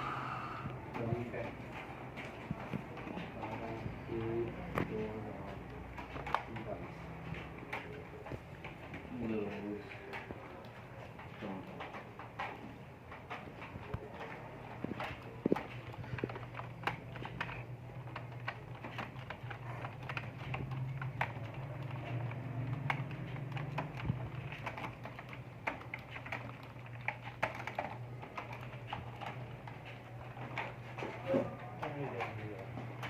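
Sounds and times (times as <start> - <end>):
steady low hum: 0.0 - 6.0
keyboard typing: 0.0 - 33.0.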